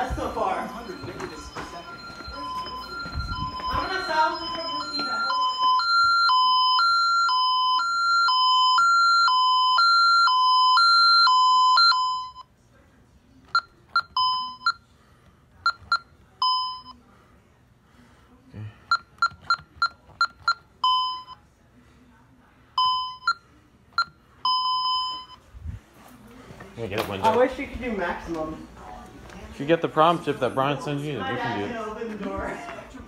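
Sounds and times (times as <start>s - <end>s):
keypad key-press beeps: 13.5s - 14.8s, 15.6s - 16.9s, 18.9s - 21.4s.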